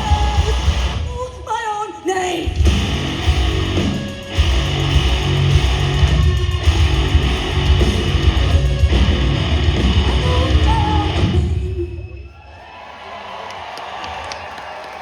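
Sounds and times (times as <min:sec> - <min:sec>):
bass guitar: 0:00.0 - 0:01.2, 0:02.5 - 0:11.8
distorted electric guitars: 0:00.0 - 0:01.2, 0:02.5 - 0:12.2
pounding drums: 0:02.5 - 0:10.4.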